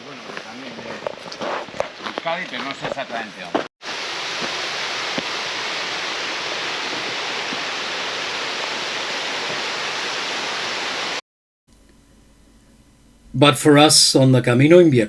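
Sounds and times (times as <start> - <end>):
rushing water roar: 3.8 - 11.2.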